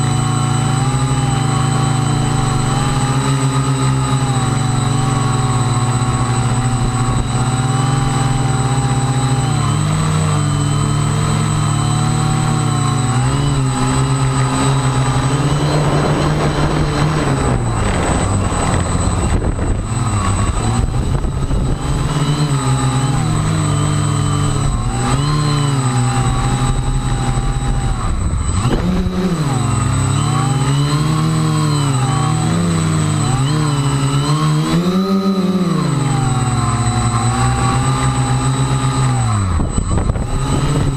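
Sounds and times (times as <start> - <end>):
high whine: 0.0 - 40.9
small aircraft propellers buzzing: 0.0 - 40.9
wind rushing over microphone: 10.7 - 34.8, 36.1 - 40.9.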